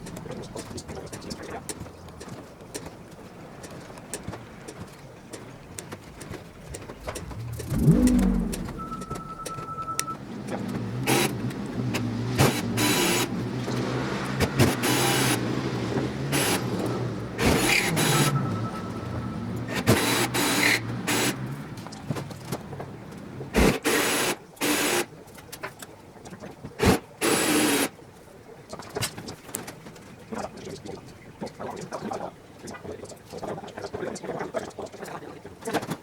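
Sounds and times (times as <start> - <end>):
steady low hum: 6.1 - 10.1.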